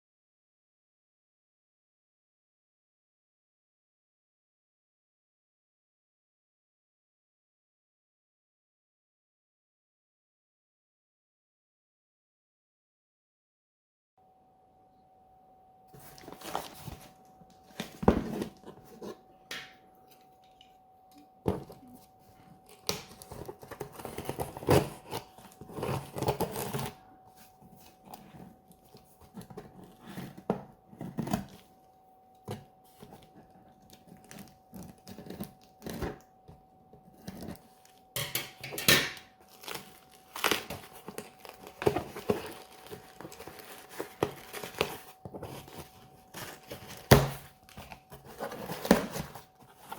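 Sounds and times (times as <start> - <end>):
faint steady hum: 14.2 - 49.9
packaging rustling and crinkling: 16.0 - 19.3, 21.5 - 31.8, 32.4 - 36.2, 39.2 - 49.9.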